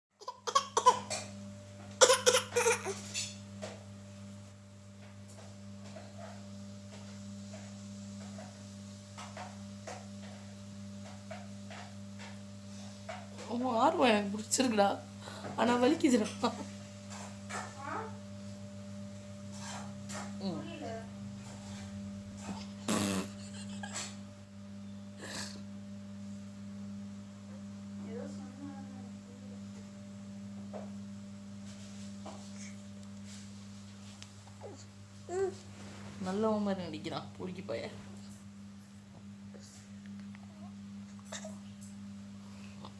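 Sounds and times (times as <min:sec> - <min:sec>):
low electrical hum: 0:00.1 - 0:42.9
baby fake coughing: 0:00.2 - 0:01.3, 0:02.0 - 0:03.0
baby vocal bursts: 0:02.0 - 0:03.0.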